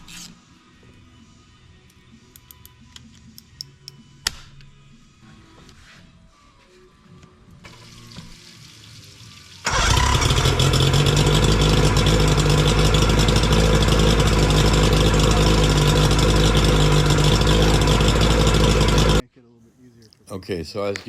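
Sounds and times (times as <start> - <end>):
outboard engine running: 9.7 - 19.2.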